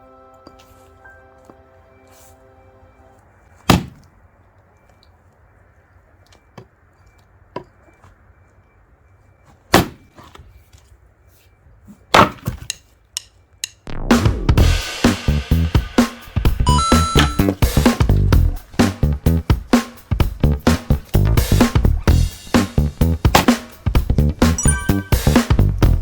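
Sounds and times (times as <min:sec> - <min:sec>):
axe splitting firewood: 0:12.1 - 0:12.9.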